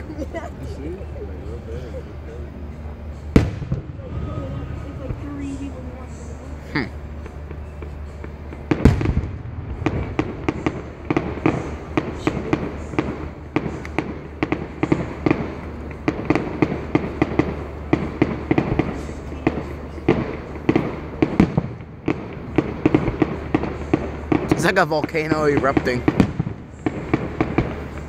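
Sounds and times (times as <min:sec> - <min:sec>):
fireworks crackling and popping: 0:03.2 - 0:28.0
firework bang: 0:03.3 - 0:05.5, 0:08.7 - 0:28.0.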